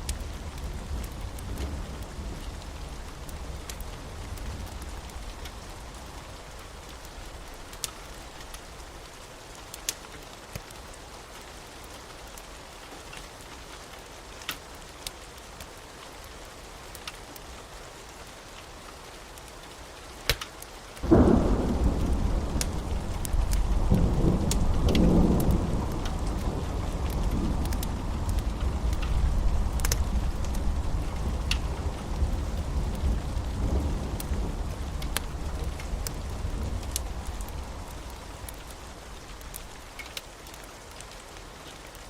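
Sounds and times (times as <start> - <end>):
steady rain: 0.0 - 42.0
thunder clap: 21.0 - 39.6.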